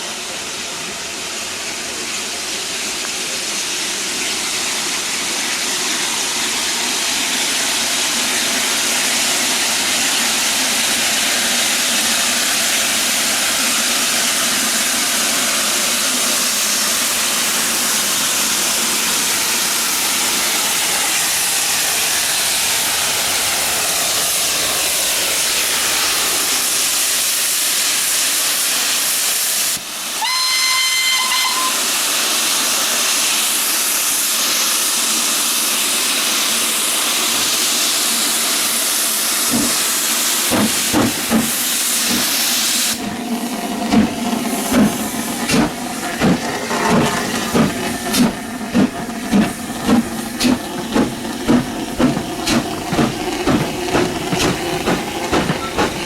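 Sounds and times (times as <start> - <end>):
steam locomotive hissing: 0.0 - 56.0
steam whistle: 30.2 - 32.1.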